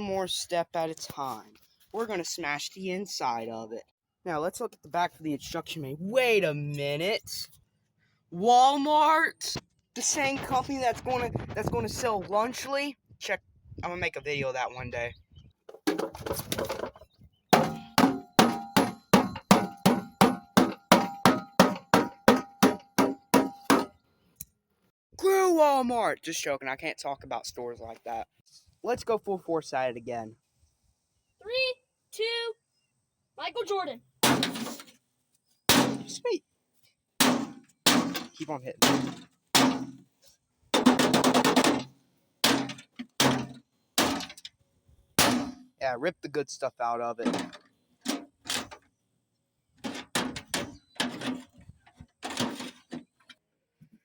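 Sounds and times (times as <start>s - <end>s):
metal clanks ringing: 17.6s - 23.9s
crowbar striking sheet metal: 17.6s - 24.0s, 34.2s - 34.8s, 35.7s - 36.2s, 37.2s - 40.0s, 45.2s - 45.6s.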